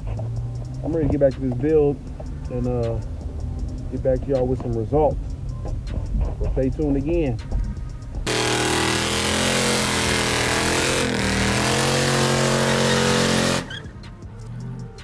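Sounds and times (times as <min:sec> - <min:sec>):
car engine at high revs: 0:08.3 - 0:13.9.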